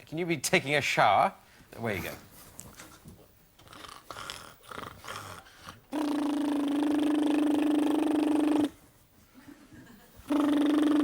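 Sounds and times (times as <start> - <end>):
man imitating shower with voice: 5.9 - 8.8, 10.3 - 11.0.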